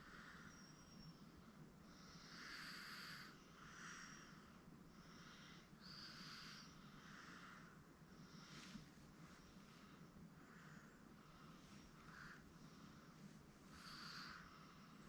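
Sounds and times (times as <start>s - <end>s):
baby snoring: 2.2s - 4.2s, 13.7s - 14.8s.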